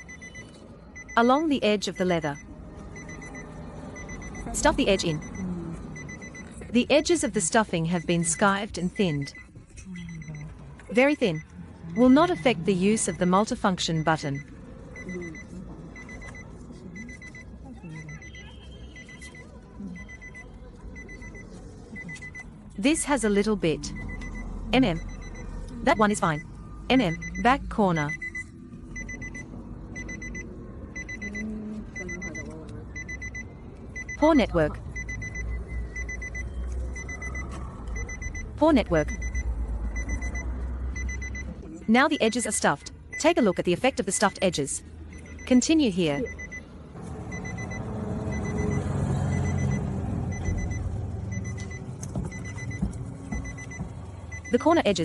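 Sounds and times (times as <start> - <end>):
high-pitched electronic beeps: 0.0 - 6.5, 17.0 - 21.4, 22.0 - 30.4, 31.0 - 41.5.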